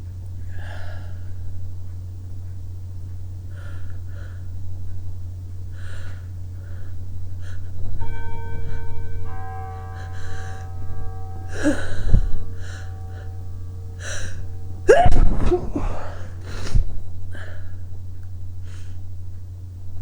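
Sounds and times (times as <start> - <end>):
steady low hum: 0.0 - 20.0
bells ringing: 7.4 - 16.7.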